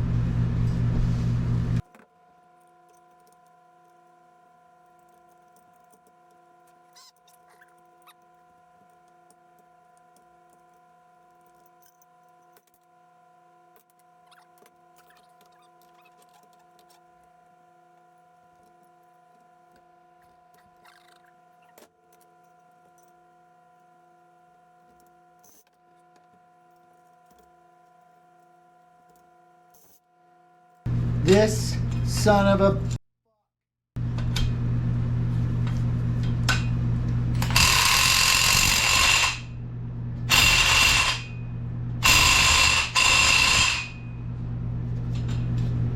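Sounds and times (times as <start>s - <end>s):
faint clicks and scrapes: 1.8s - 13.0s, 13.7s - 23.4s.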